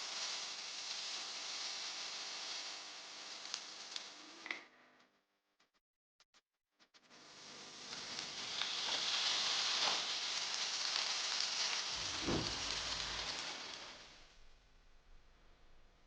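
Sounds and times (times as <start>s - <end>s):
food sizzling in hot oil: 0.0s - 4.4s, 7.2s - 14.4s
low thud: 12.0s - 13.2s.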